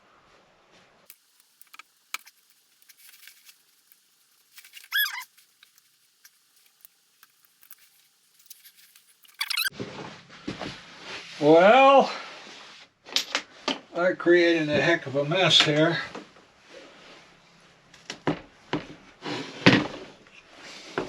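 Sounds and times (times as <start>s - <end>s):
high wavering squeak: 4.6s - 5.4s, 9.2s - 9.7s.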